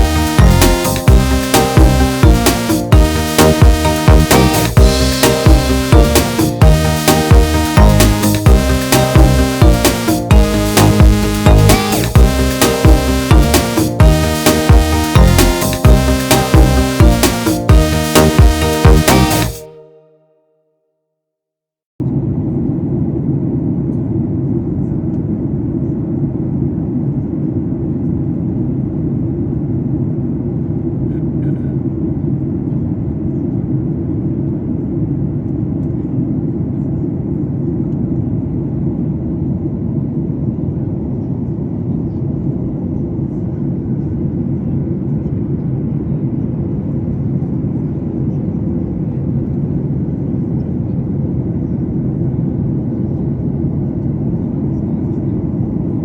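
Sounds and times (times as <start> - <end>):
airliner cabin engine drone: 22.1 - 56.0.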